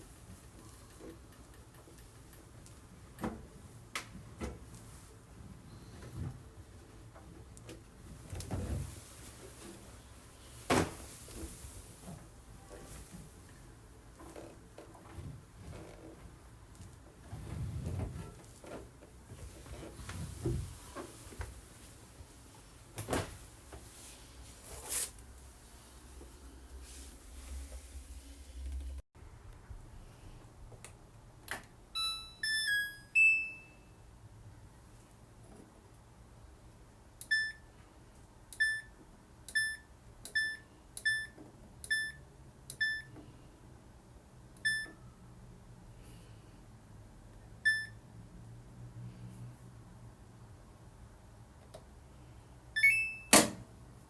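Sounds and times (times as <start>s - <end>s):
knocks and rustles of handling: 0.0s - 29.0s
washing machine short beeps: 32.0s - 34.0s, 37.2s - 37.7s, 38.5s - 43.2s, 44.6s - 45.2s, 47.6s - 48.0s, 52.8s - 53.5s.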